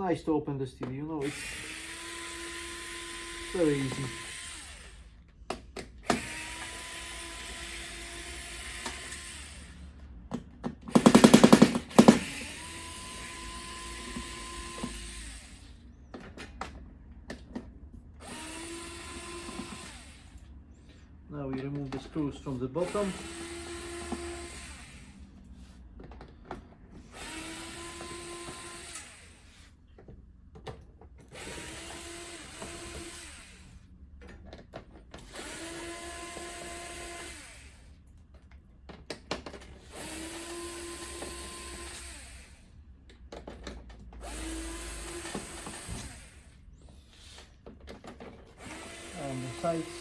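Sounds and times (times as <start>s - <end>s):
electric screwdriver motor whine: 1.2s - 5.0s, 6.1s - 9.6s, 31.4s - 33.7s, 39.9s - 42.6s, 44.2s - 46.6s, 48.6s - 50.0s.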